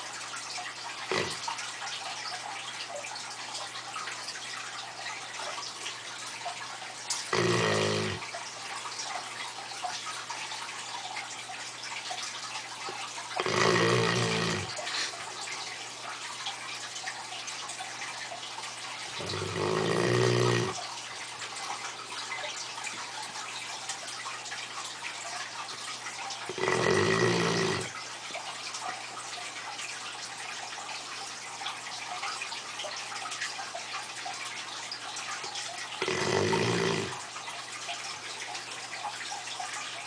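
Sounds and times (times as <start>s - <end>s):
dog snoring: 1.1s - 1.4s, 7.3s - 8.2s, 13.4s - 14.8s, 19.2s - 20.8s, 26.5s - 27.9s, 36.0s - 37.2s.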